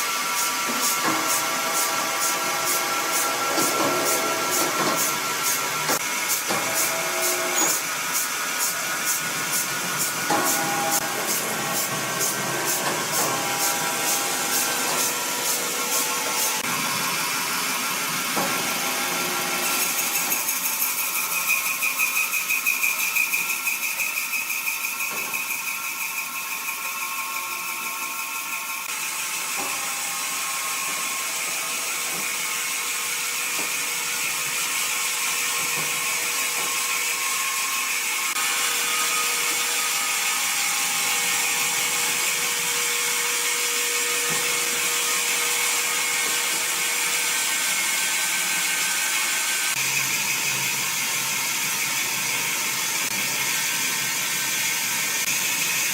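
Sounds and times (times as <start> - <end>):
woodworking machinery rattling: 18.2 - 53.3.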